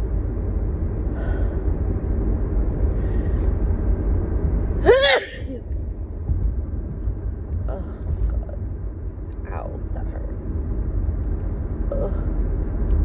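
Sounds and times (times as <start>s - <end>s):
car cabin road rumble: 0.0s - 13.0s
woman sneezing: 4.9s - 5.5s.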